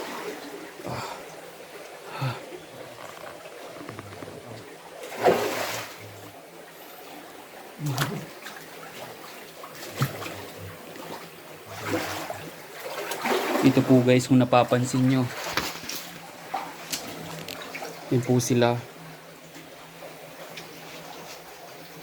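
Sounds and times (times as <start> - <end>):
flowing water: 0.0 - 22.0
knocks and rustles: 2.9 - 4.6.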